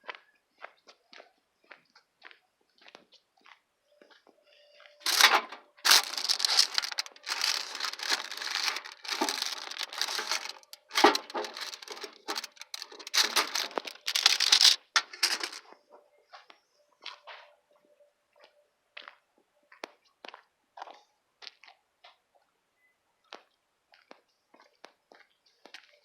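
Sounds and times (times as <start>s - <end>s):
crinkling and rustling: 5.0s - 15.7s.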